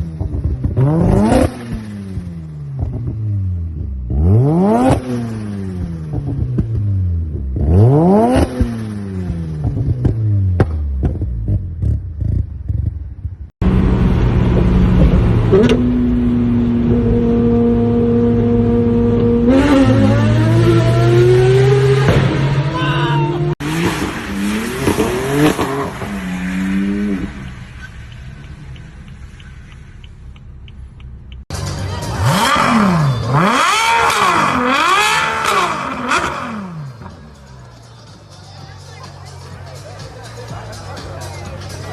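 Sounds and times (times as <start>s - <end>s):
car engine revving: 0.0s - 41.9s
exhaust crackles: 23.4s - 41.9s.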